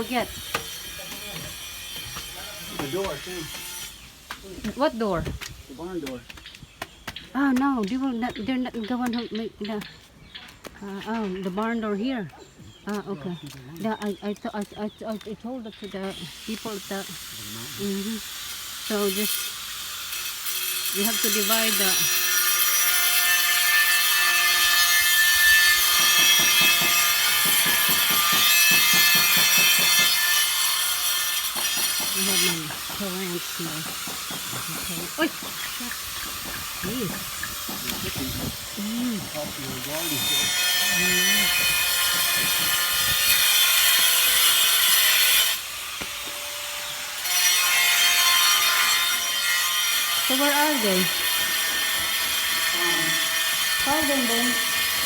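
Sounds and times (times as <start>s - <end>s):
hand saw rasping through wood: 0.0s - 4.0s, 16.1s - 55.0s
power tool whining: 16.0s - 55.0s.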